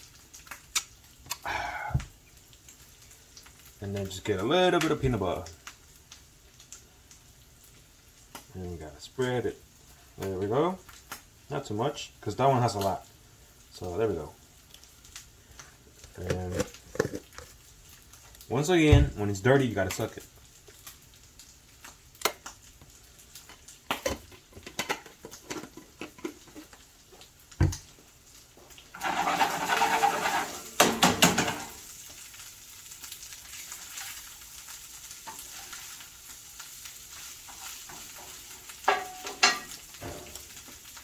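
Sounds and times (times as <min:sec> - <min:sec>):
meat sizzling in a pan: 0:00.0 - 0:41.0
stirring in a pan: 0:12.7 - 0:20.8, 0:21.5 - 0:41.0.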